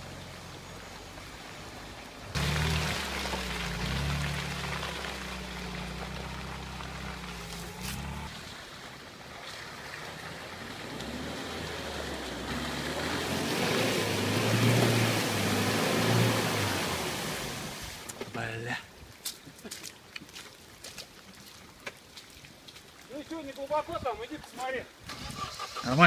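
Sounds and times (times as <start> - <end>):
engine running under load: 2.3 - 8.4
tyres churning through water: 2.3 - 18.1.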